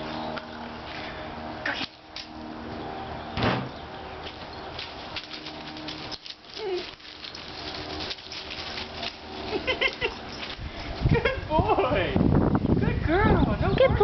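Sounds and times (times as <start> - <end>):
loud thump: 3.4 - 3.8
cat and puppy scuffling: 4.2 - 11.1.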